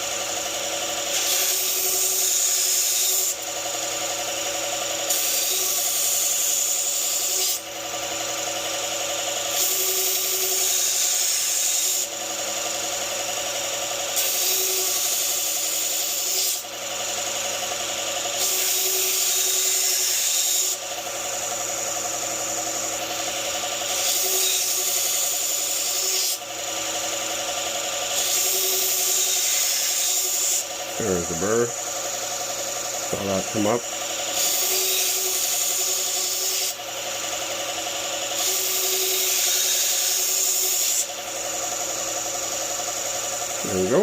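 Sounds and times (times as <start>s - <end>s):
grinder motor hum: 0.0s - 44.0s
knife grinding hiss: 1.1s - 3.4s, 5.1s - 7.6s, 9.5s - 12.1s, 14.1s - 16.6s, 18.4s - 20.8s, 23.9s - 26.4s, 28.1s - 30.7s, 34.3s - 36.8s, 38.4s - 41.1s.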